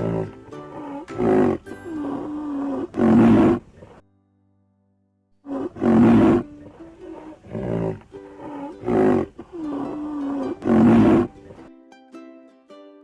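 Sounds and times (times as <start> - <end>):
music playing: 0.0 - 3.1
big cat roaring: 1.2 - 3.6, 5.5 - 6.4, 7.2 - 8.0, 8.8 - 9.3, 10.0 - 11.3.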